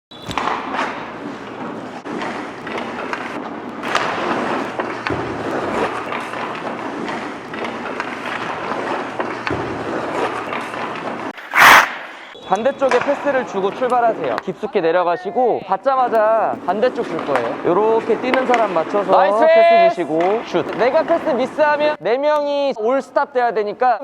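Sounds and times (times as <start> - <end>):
skate blades scraping ice: 0.1 - 14.3, 16.6 - 22.0
sticks and pucks knocking: 0.3 - 12.0, 16.9 - 19.2.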